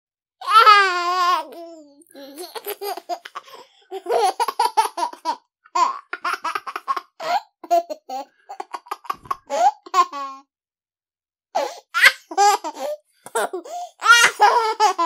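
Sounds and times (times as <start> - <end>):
baby giggling: 0.4 - 10.4, 11.6 - 15.0.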